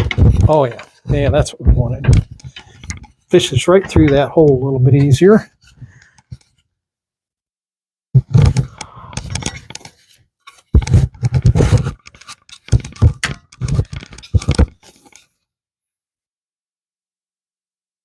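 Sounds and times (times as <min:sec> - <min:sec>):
material scraping through wood hole: 0:00.0 - 0:04.3, 0:08.2 - 0:15.2.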